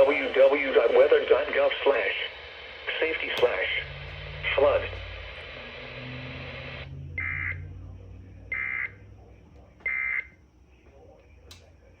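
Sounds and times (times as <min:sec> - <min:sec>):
weather radio hiss: 0:00.0 - 0:06.9.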